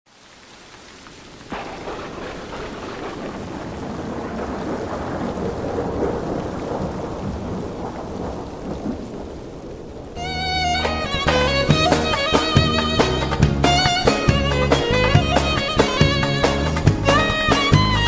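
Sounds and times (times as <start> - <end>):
rain falling: 0.1 - 18.0
thunder crack and rumble: 1.4 - 10.3
string music: 10.2 - 18.0.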